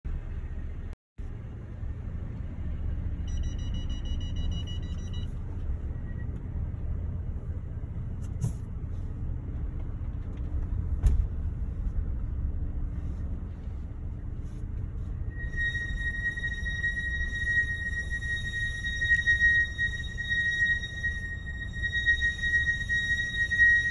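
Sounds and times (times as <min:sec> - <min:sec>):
car road rumble: 0:00.1 - 0:23.9
high-pitched brake squeal: 0:15.0 - 0:23.9.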